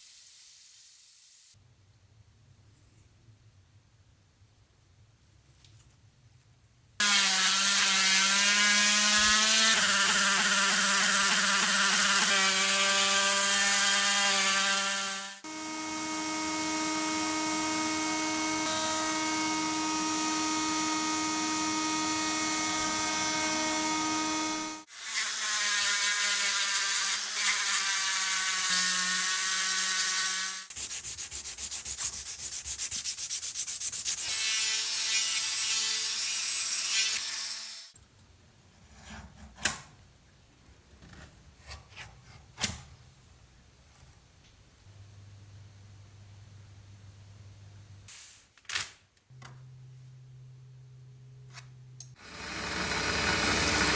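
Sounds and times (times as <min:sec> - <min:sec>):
power tool whining: 0:07.0 - 0:24.9, 0:52.2 - 0:53.9
sanding with fast ticking: 0:30.7 - 0:34.3.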